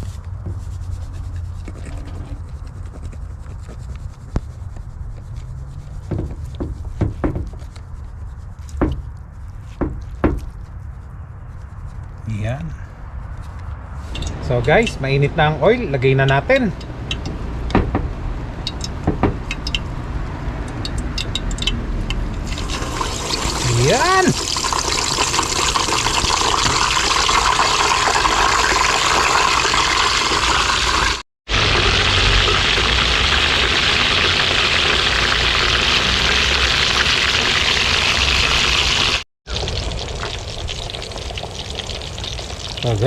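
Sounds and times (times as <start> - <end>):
sharp knocks: 17.1 - 19.8
pork sizzling in hot oil: 22.4 - 43.0.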